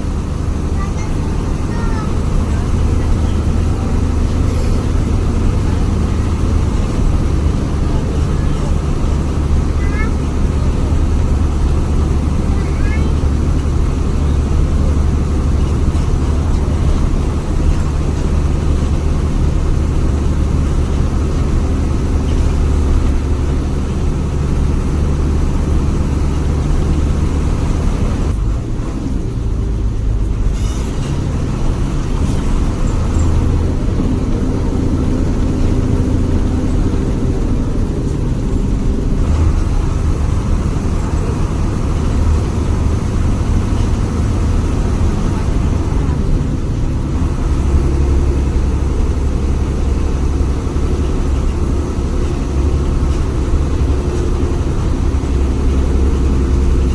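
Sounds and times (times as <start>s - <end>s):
bus engine running: 0.0s - 56.9s.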